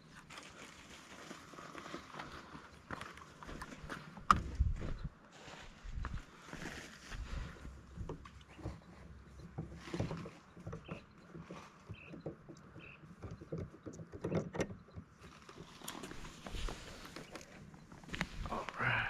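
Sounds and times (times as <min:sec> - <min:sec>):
gear knocking on plastic kayak: 0:07.9 - 0:15.8.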